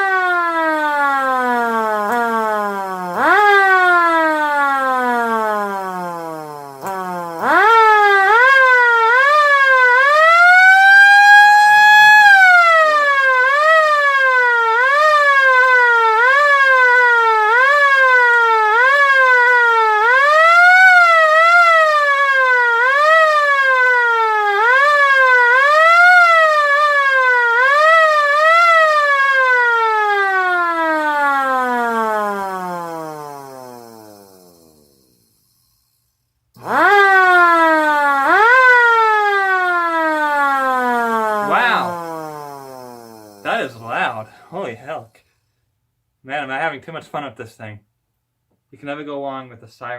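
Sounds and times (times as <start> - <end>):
air raid siren wailing: 0.0 - 26.5, 36.6 - 42.6.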